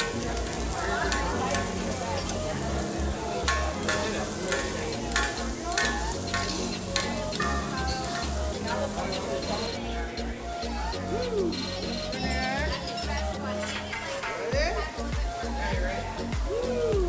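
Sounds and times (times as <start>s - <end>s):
metal spatula scraping: 0.0s - 9.8s, 11.6s - 14.8s
spatula clacking on griddle: 0.0s - 9.8s, 11.6s - 14.6s
food sizzling on a grill: 0.0s - 17.0s.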